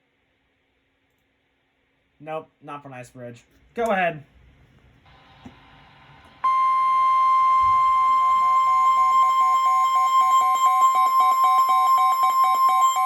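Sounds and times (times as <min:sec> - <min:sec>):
lower beeping tone: 0:06.4 - 0:13.0
steady high-pitched alert tone: 0:06.4 - 0:13.0.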